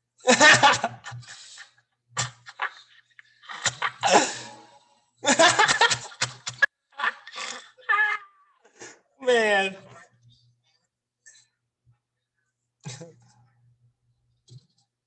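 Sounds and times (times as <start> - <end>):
laughter: 0.2 - 1.4, 2.2 - 8.4
voices: 9.2 - 10.1.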